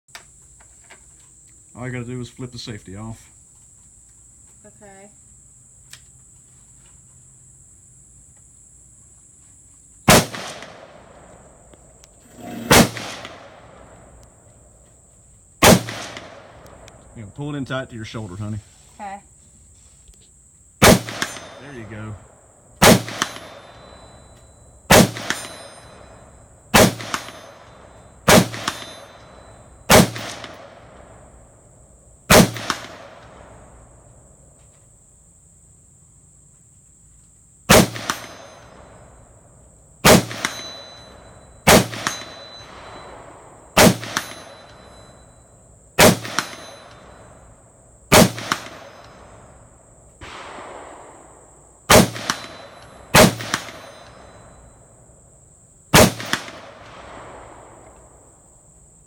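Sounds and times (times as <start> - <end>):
rifle shots echoing: 10.1 - 11.7, 12.3 - 14.2, 15.6 - 18.4, 20.8 - 22.2, 22.8 - 24.3, 24.9 - 31.3, 32.3 - 33.8, 37.7 - 39.1, 40.0 - 45.2, 46.0 - 47.4, 48.1 - 54.7, 55.9 - 58.4.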